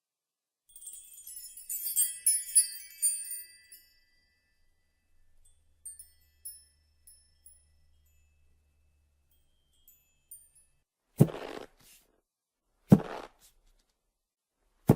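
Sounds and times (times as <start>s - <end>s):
tinkling cartoon chime notes: 0.7s - 10.9s.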